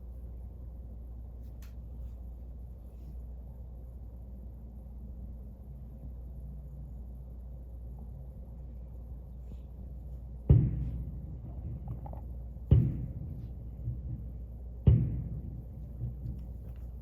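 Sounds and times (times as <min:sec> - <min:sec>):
steady low hum: 0:00.0 - 0:17.0
fireworks booming: 0:10.4 - 0:17.0
faint fireworks pops: 0:10.5 - 0:17.0.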